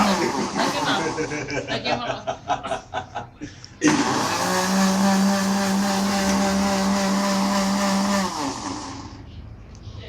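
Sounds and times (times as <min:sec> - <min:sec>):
blender motor whirring: 0:00.0 - 0:01.2, 0:03.8 - 0:09.2.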